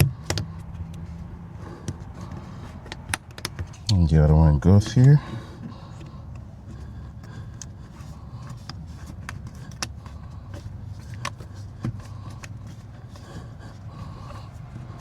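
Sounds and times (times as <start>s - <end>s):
connectors clicking in: 0.0s - 1.0s, 1.8s - 4.0s
steady low hum: 0.0s - 15.0s.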